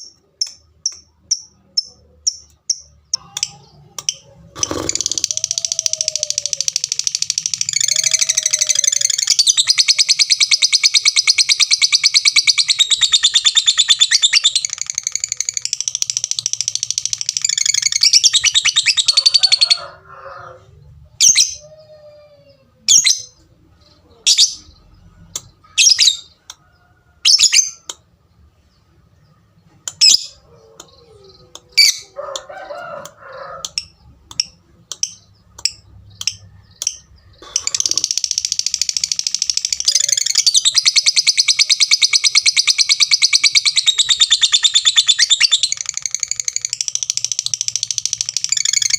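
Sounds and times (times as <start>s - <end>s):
sharp high bird chirps: 0.0s - 19.5s, 33.3s - 48.9s
lovebird chattering trill: 0.0s - 19.8s, 33.6s - 48.9s.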